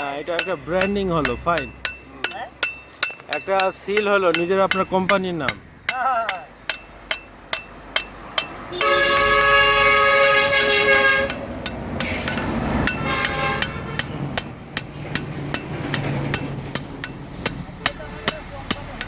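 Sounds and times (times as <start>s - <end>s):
hammer blows on metal: 0.0s - 19.0s
train horn blast: 8.7s - 11.4s, 13.0s - 14.0s.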